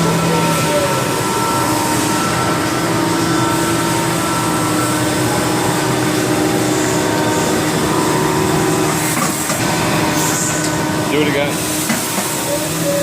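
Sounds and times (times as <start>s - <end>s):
machine humming with held tones: 0.0s - 13.0s
hiss: 11.5s - 13.0s.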